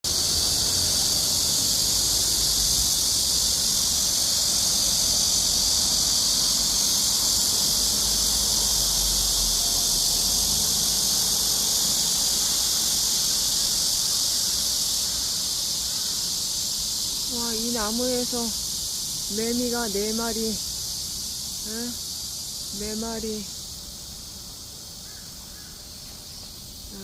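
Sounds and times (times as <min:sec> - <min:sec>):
cicadas singing: 0:00.0 - 0:27.0.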